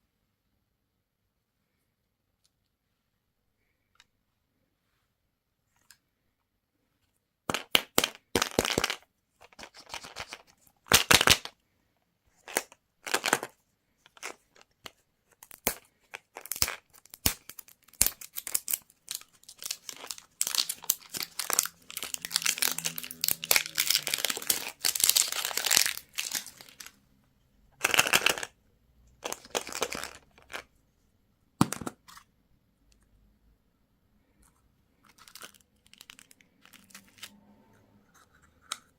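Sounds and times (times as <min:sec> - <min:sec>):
candy wrappers crinkling: 0:15.4 - 0:27.0, 0:27.8 - 0:28.5, 0:29.2 - 0:30.7, 0:35.0 - 0:37.3.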